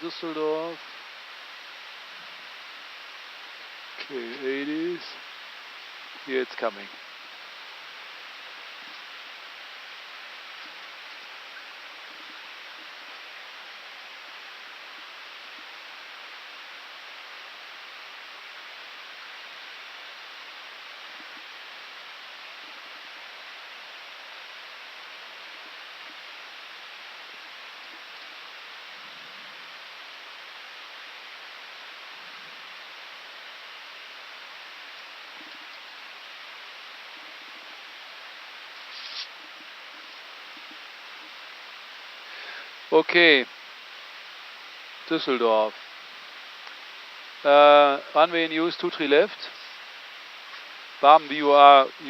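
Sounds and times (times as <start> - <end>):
cockpit airflow hiss: 0.0 - 52.0.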